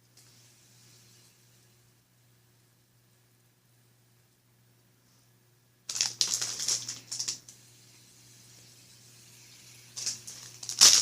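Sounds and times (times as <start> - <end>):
packaging crinkling and rattling: 5.9 - 7.4, 10.0 - 11.0.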